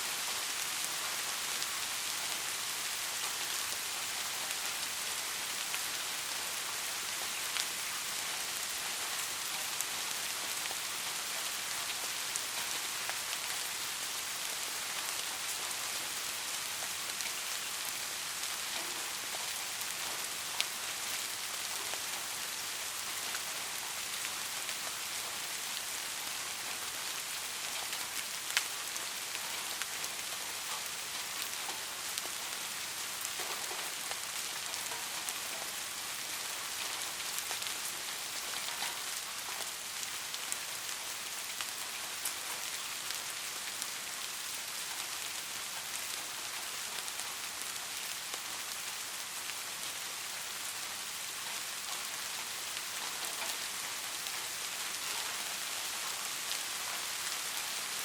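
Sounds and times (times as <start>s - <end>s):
steady rain: 0.0s - 58.0s
raindrops ticking on surface: 0.1s - 58.0s.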